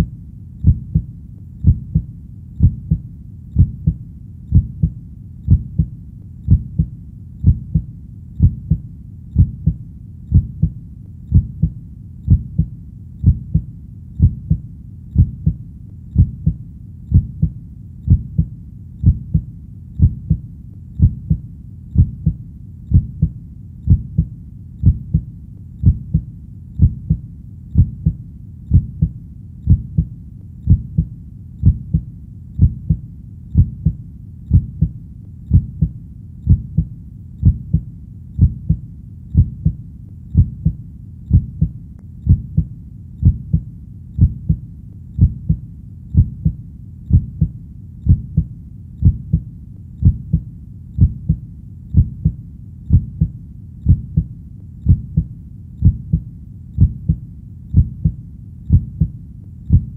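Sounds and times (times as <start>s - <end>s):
low steady rumble: 0.0s - 59.9s
heartbeat double thump: 0.6s - 3.0s, 3.6s - 5.9s, 6.5s - 8.8s, 9.4s - 14.6s, 15.2s - 15.6s, 16.2s - 20.4s, 22.0s - 27.2s, 27.8s - 30.1s, 30.7s - 33.0s, 33.6s - 35.9s, 36.5s - 37.8s, 38.4s - 38.8s, 39.4s - 39.8s, 40.4s - 41.7s, 42.3s - 43.6s, 44.2s - 44.6s, 45.2s - 45.6s, 46.2s - 47.5s, 48.1s - 50.4s, 51.0s - 51.4s, 52.0s - 53.3s, 53.9s - 54.3s, 54.9s - 56.2s, 56.8s - 57.2s, 57.8s - 59.1s, 59.7s - 59.9s.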